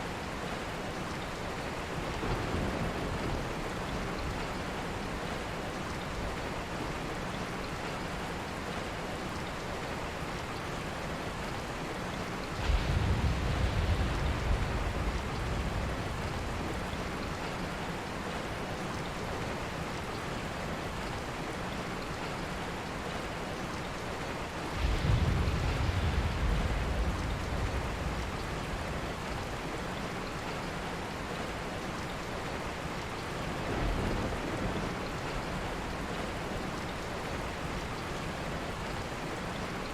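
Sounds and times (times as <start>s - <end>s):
steady rain: 0.0s - 39.9s
thunder rolling: 12.6s - 17.4s, 24.8s - 29.5s.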